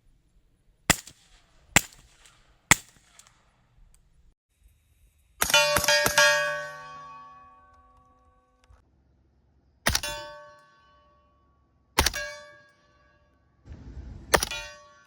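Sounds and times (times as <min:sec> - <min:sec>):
suppressed rifle shots: 0:00.9 - 0:04.0, 0:09.9 - 0:10.4, 0:12.0 - 0:12.5, 0:14.3 - 0:14.8
steel target ringing: 0:05.4 - 0:08.5, 0:09.9 - 0:11.4, 0:12.0 - 0:13.3, 0:14.3 - 0:15.0.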